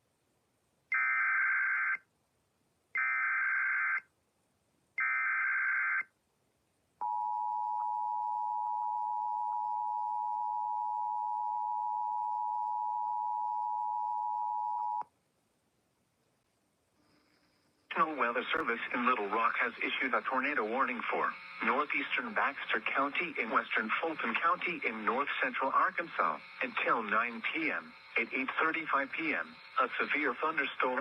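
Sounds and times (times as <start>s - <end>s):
buzzy data bursts: 17.0s - 31.0s.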